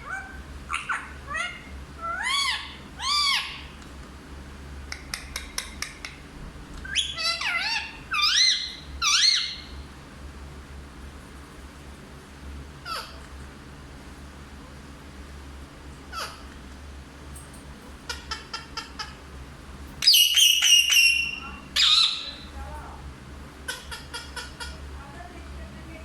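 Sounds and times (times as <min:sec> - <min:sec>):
parrot squawking: 0:00.0 - 0:03.8, 0:06.8 - 0:09.8, 0:12.8 - 0:13.2, 0:16.1 - 0:16.5, 0:18.1 - 0:19.2, 0:20.0 - 0:22.6, 0:23.6 - 0:24.9.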